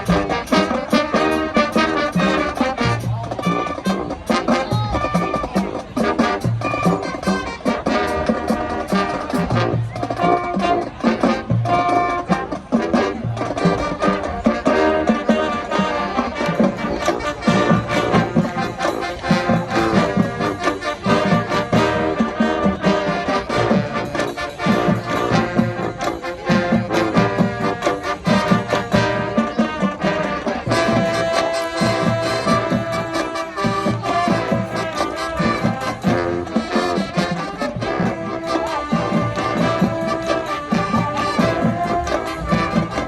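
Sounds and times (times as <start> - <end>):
brass section playing: 0.0 - 43.0
drum-line beat: 0.0 - 43.0.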